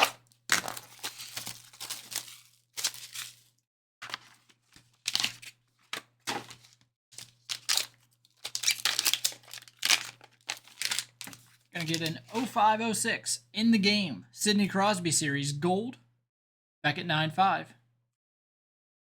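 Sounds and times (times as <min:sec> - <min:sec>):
packaging ripping and crinkling: 0:00.0 - 0:05.6, 0:06.3 - 0:12.5.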